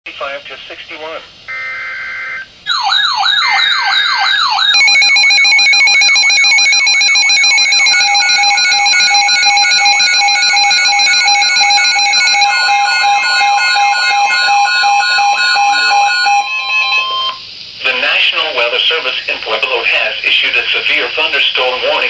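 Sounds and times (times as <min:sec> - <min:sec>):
electronic siren yelp: 0:01.5 - 0:17.4
electronic alarm tones: 0:01.5 - 0:17.5.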